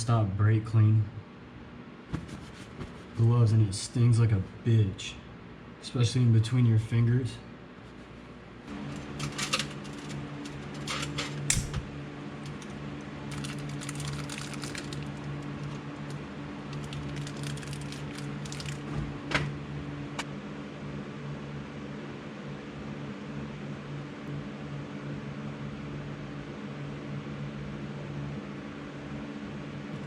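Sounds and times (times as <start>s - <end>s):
steady mechanical hum: 0.0s - 30.0s
metal parts clicking and knocking: 8.9s - 11.7s.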